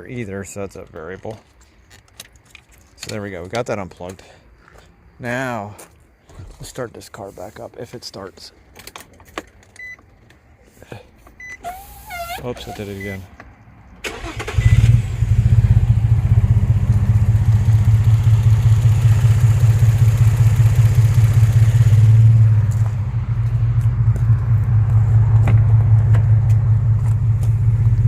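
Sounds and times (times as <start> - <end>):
engine cranking: 14.0 - 15.5
car engine idling and misfiring: 14.0 - 28.0.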